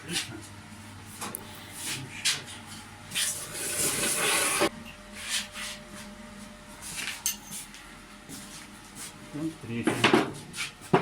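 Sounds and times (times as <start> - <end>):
rough scraping on a workpiece: 3.2 - 5.4.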